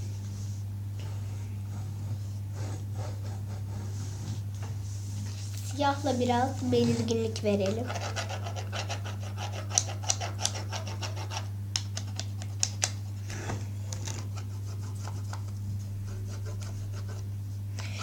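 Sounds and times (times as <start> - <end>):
steady low hum: 0.0 - 18.0
pencil scratching on paper: 7.8 - 11.5, 14.3 - 17.3.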